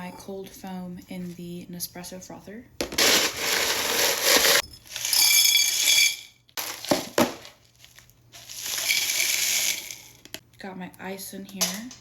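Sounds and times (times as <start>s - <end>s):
ice cubes clattering into glass: 8.4s - 10.1s.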